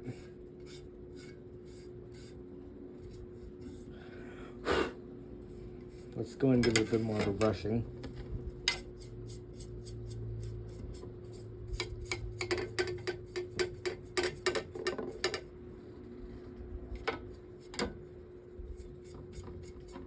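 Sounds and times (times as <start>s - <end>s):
brush scrubbing metal fan blade: 0.0s - 2.4s, 5.6s - 7.8s, 8.6s - 15.5s, 17.3s - 20.0s
faint steady hum: 0.0s - 20.0s.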